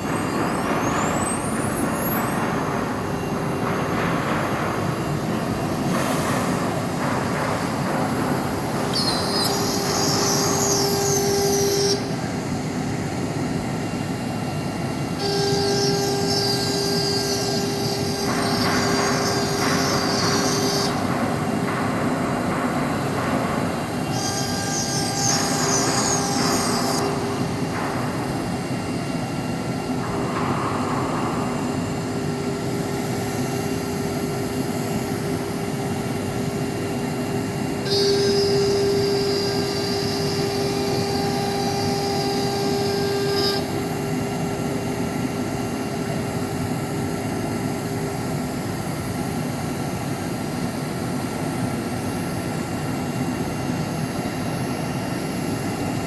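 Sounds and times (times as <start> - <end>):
cnc router running: 0.0 - 56.0
high-pitched whine: 23.9 - 45.2.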